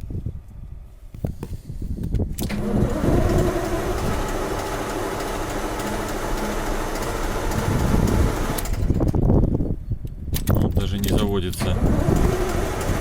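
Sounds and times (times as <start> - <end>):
diesel engine starter cranking: 2.4 - 9.5, 10.4 - 13.0.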